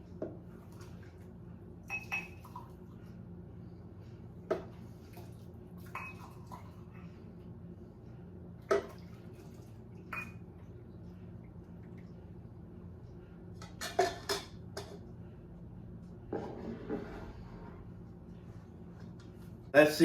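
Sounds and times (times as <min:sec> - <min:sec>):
steady low hum: 0:00.0 - 0:20.0
kitchen utensils and dishes clinking: 0:13.6 - 0:15.0.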